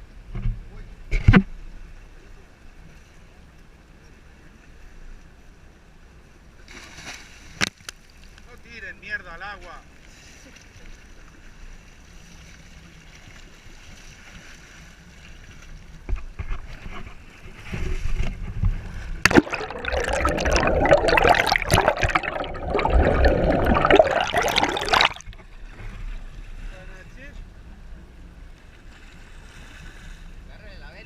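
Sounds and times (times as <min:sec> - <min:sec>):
water splashing and gurgling: 0:19.1 - 0:25.4
water rushing loudly: 0:19.3 - 0:25.4.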